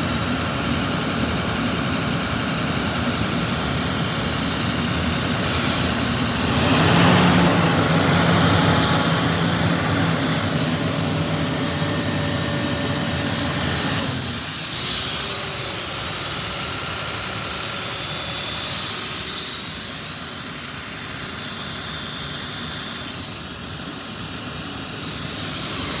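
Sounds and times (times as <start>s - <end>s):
diesel engine running: 3.2s - 14.7s.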